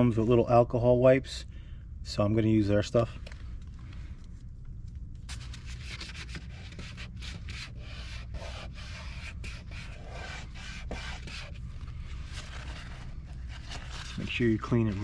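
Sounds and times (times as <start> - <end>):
wipe scrubbing back and forth: 5.4 - 15.0.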